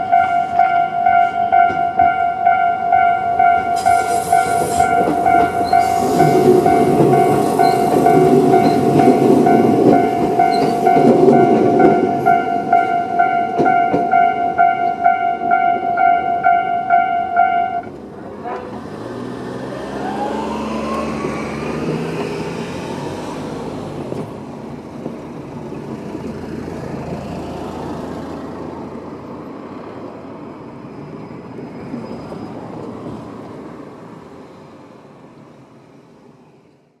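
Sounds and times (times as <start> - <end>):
vehicles driving over level crossing: 0.0 - 29.4
engine accelerating: 18.6 - 24.3.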